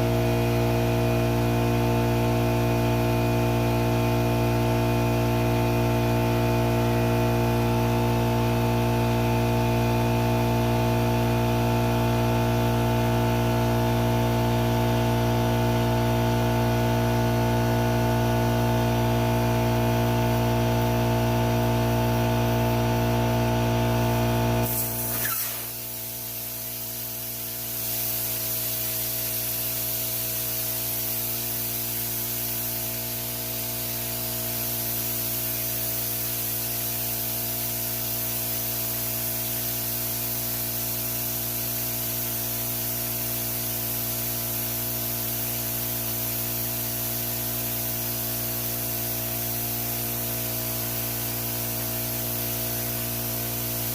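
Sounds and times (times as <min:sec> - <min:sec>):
electric motor humming: 0:24.6 - 0:26.2
compressed air hissing: 0:24.6 - 0:53.9.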